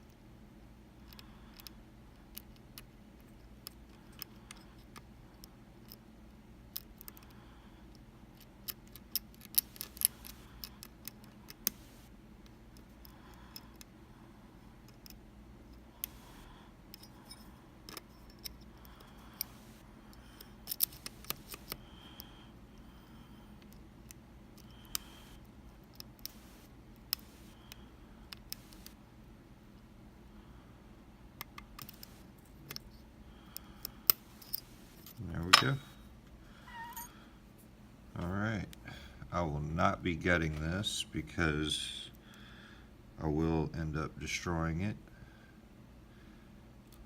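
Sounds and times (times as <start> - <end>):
lock pick clicking in lock: 20.6 - 21.8.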